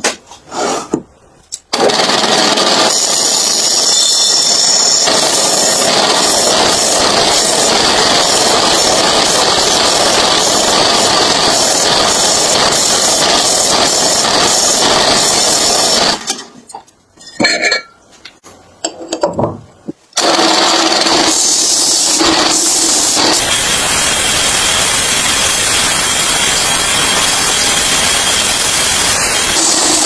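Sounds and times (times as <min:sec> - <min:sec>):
power tool grinding a surface: 0:01.9 - 0:16.2, 0:20.3 - 0:30.0.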